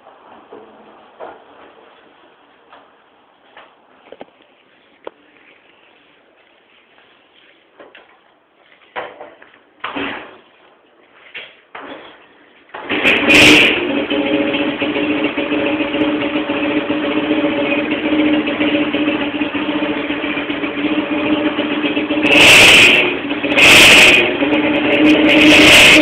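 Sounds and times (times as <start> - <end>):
engine through modified exhaust: 12.7 - 26.0
loud engine revs: 12.9 - 26.0.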